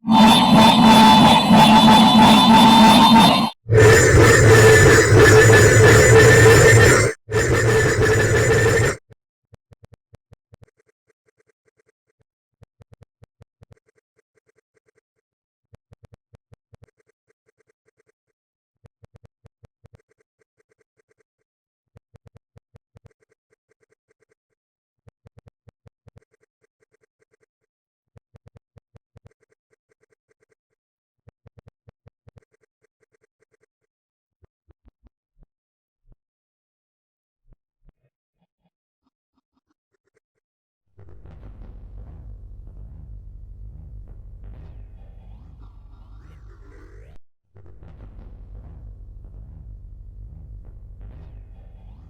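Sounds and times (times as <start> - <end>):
stuttering electronic beep: 0.0 - 9.0.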